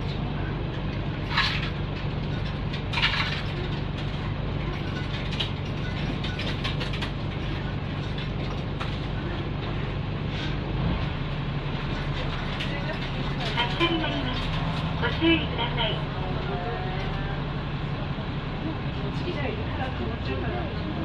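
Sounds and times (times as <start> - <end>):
light clicking and rattling: 0.0 - 9.8
diesel engine running: 0.0 - 21.0.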